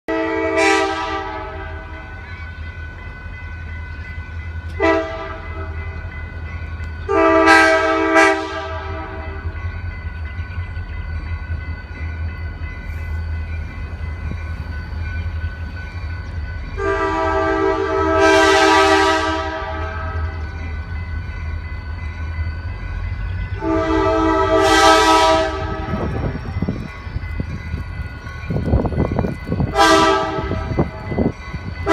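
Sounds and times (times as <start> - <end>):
locomotive air horn blasts: 0.1 - 2.0, 4.8 - 5.8, 7.1 - 9.4, 16.8 - 20.4, 23.6 - 26.1, 29.7 - 30.7.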